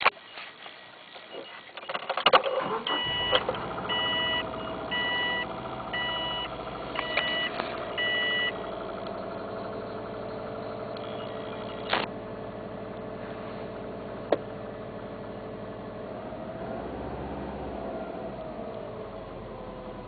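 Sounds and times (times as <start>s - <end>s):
car engine cranking and idling: 0.0s - 20.0s
fast engine ticking: 2.6s - 13.0s
two-tone beeps: 2.7s - 8.6s, 11.0s - 11.9s.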